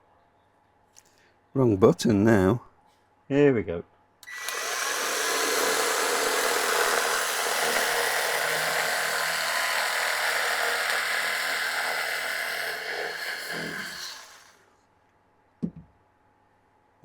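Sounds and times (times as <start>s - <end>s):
electric knife sawing foam: 4.2s - 14.6s.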